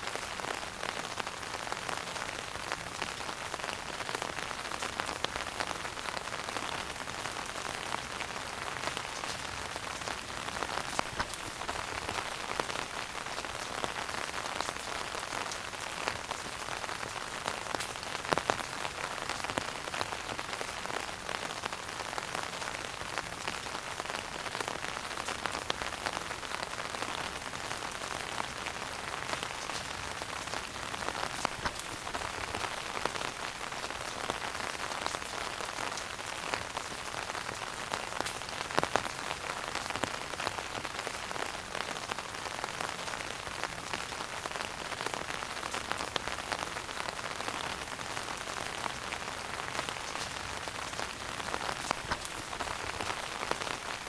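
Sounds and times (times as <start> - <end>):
wood fire crackling: 7.4 - 20.6, 28.1 - 39.2, 48.4 - 54.0.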